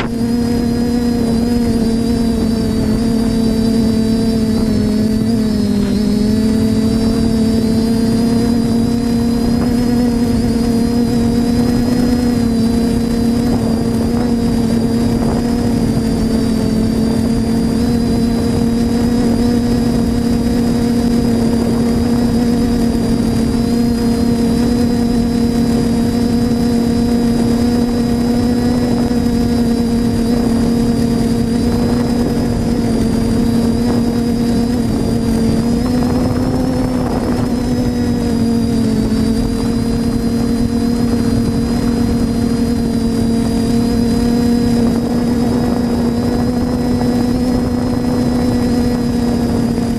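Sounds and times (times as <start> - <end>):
drone propellers buzzing: 0.0 - 49.9.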